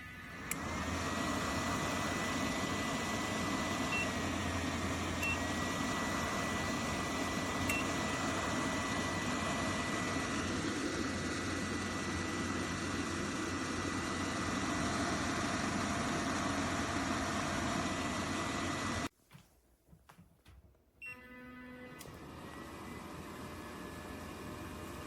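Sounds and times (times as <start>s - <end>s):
fan heater running: 0.0s - 19.1s
short control panel beeps: 5.2s - 5.4s, 7.7s - 7.9s, 21.0s - 21.5s.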